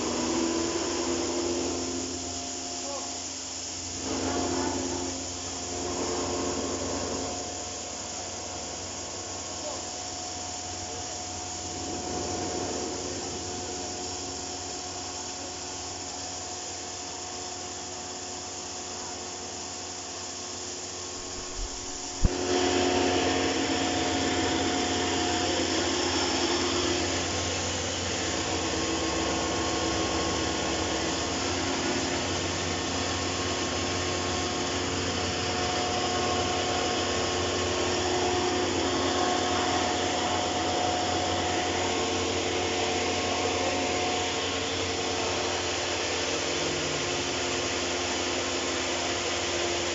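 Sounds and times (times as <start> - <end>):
feed grinder humming: 0.0 - 3.1, 3.9 - 7.7, 20.8 - 49.9.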